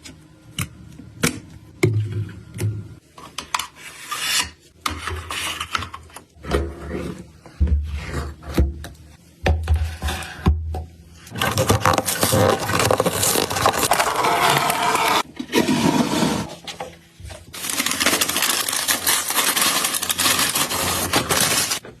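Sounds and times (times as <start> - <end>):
crackling rustling handling noise: 16.7 - 21.9.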